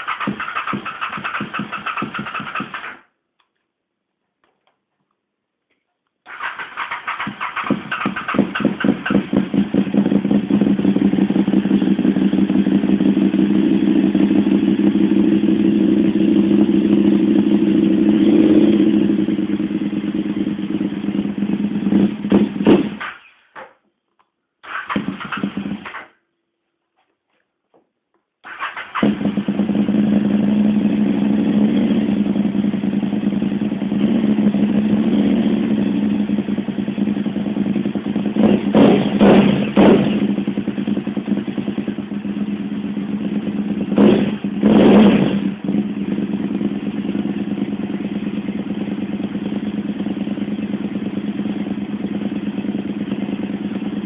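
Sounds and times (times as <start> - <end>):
motorcycle engine cranking: 0.0 - 3.0, 6.3 - 9.9, 24.6 - 26.2, 28.4 - 29.9
motorcycle engine revving and idling: 0.0 - 3.2, 6.3 - 23.8, 24.6 - 26.2, 28.4 - 54.0.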